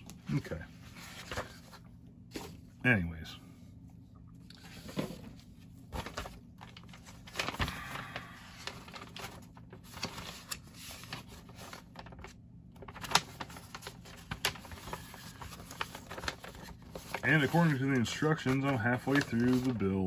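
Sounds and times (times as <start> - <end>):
paper rustling: 0.0 - 2.7, 4.6 - 20.0
faint steady hum: 0.0 - 20.0.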